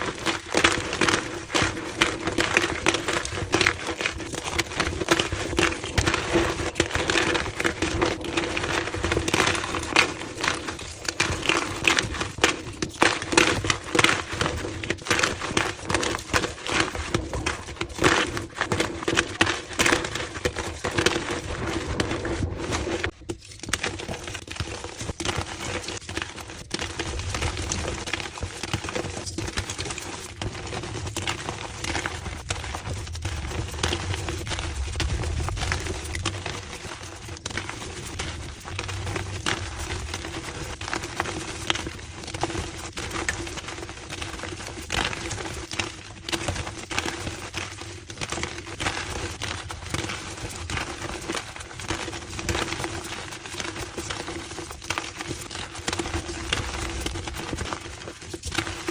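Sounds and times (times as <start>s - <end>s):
chalk crunching and crackling: 0.0s - 58.9s
low steady hum: 30.7s - 42.2s.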